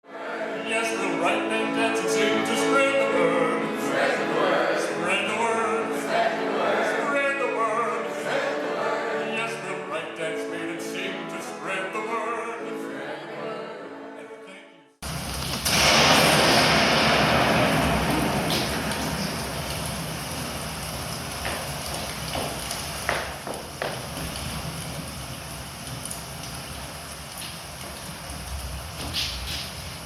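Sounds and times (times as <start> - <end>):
operatic singing with music: 0.1 - 14.8.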